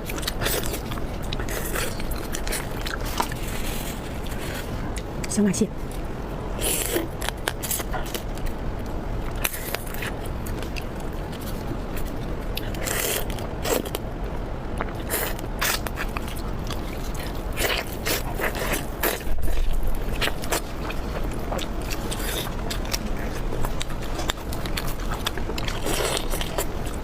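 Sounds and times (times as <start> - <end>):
crab shell cracking and crunching: 14.8 - 27.0.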